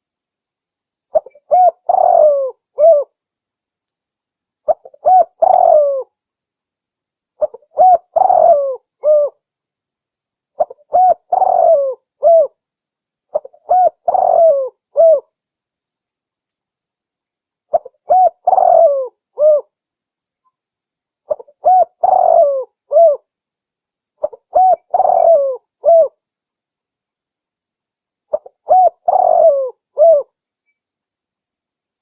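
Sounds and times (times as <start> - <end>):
dove cooing: 1.1 - 3.1, 4.7 - 6.1, 7.4 - 9.4, 10.6 - 12.6, 13.3 - 15.3, 17.7 - 19.7, 21.3 - 23.3, 24.2 - 26.2, 28.3 - 30.3.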